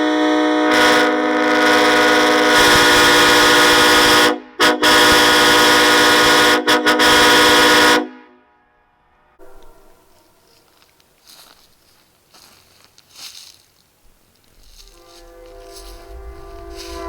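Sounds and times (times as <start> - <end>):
vehicle air horn blasts: 0.0 - 10.4, 14.6 - 17.0.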